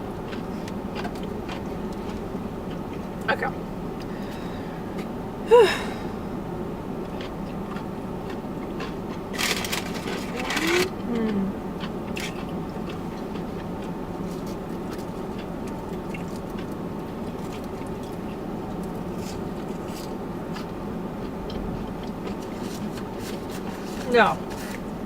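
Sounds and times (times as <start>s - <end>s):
low background hum: 0.0s - 25.0s
chewing with wet mouth clicks: 0.2s - 3.3s, 7.0s - 9.3s, 11.2s - 23.1s.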